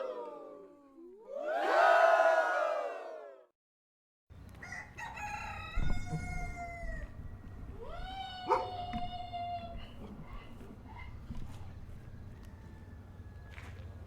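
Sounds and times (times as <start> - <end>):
farmyard background noise: 4.3 - 14.0
rooster crowing: 4.6 - 7.2, 12.0 - 13.8.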